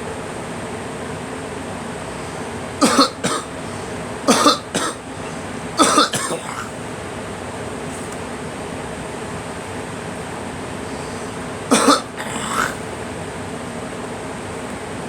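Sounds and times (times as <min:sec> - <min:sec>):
girl chesty coughing: 0:02.8 - 0:03.6, 0:04.3 - 0:05.1, 0:05.8 - 0:06.8, 0:11.7 - 0:12.9.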